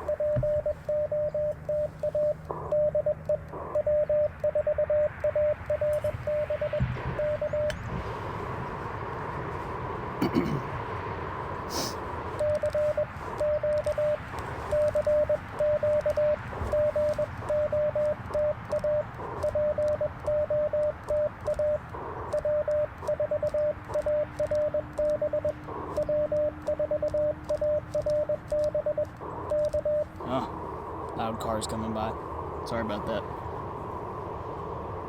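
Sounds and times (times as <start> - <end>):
morse code tone: 0.0 - 7.8, 12.4 - 30.6.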